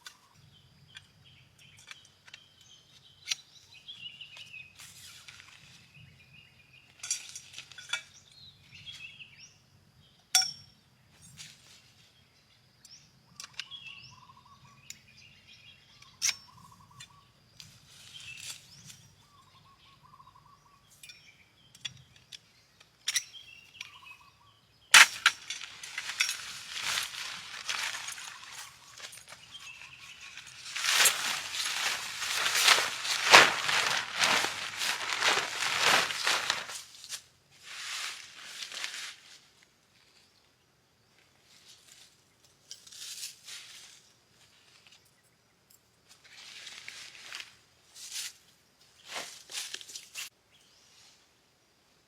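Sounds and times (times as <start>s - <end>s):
birds chirping and warbling: 0.0s - 7.1s, 12.4s - 36.7s.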